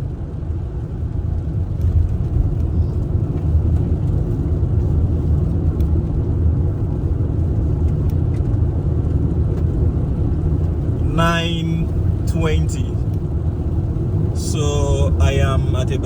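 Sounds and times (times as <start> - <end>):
car engine and tyre noise: 0.0 - 16.0.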